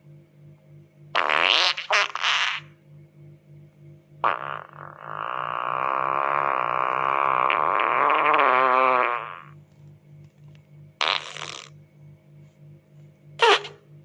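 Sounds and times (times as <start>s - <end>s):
long wavering fart: 1.2s - 2.7s, 4.2s - 9.6s, 11.0s - 11.8s, 13.4s - 13.8s
short hissy fart: 1.2s - 2.7s, 4.2s - 9.6s, 11.0s - 11.8s, 13.4s - 13.8s.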